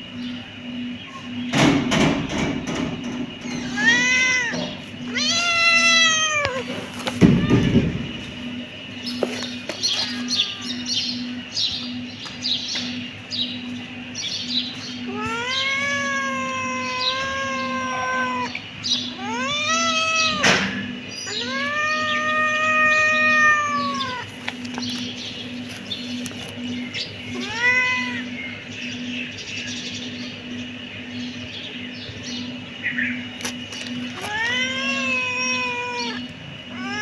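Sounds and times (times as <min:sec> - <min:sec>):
kittens meowing: 0:01.2 - 0:08.7, 0:09.8 - 0:11.4, 0:14.9 - 0:25.1, 0:26.1 - 0:29.1, 0:33.4 - 0:37.0.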